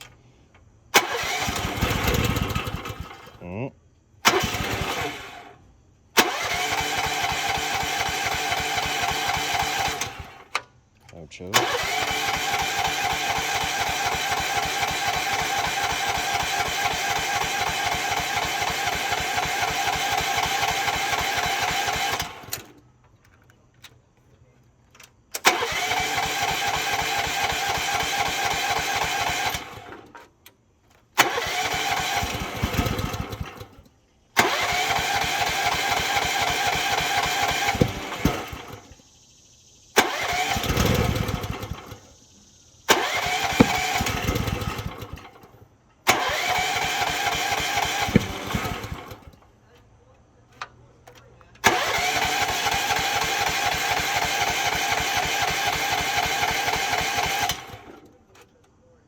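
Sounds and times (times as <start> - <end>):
engine cranking on starter: 0.0 - 10.8, 11.4 - 23.0, 25.0 - 49.5, 50.5 - 58.8
engine briefly rumbling: 0.9 - 5.6, 34.4 - 39.0, 40.0 - 49.4.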